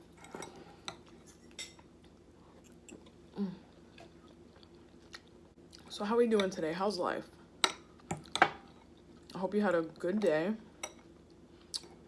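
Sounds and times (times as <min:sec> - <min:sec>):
chewing and mouth sounds: 0:02.1 - 0:05.9.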